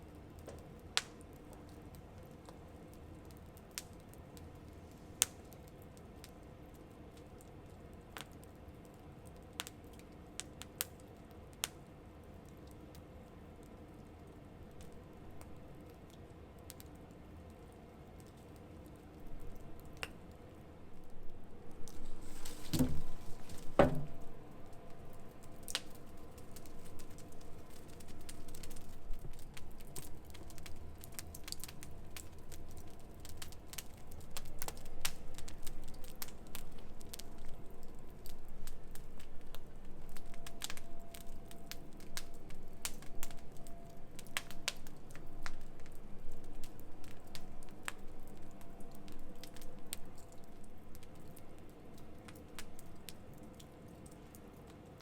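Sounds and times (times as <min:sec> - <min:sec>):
campfire crackling: 0:00.1 - 0:55.0
sharp pops from fire: 0:21.7 - 0:37.6
heavy knocks: 0:22.2 - 0:24.3.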